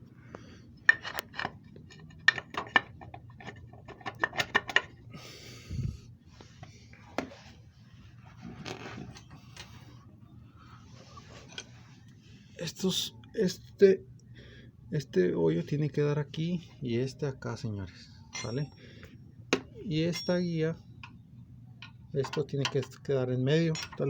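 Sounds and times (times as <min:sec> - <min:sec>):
metal parts clinking: 0:18.3 - 0:18.8, 0:20.0 - 0:20.6, 0:23.6 - 0:24.0.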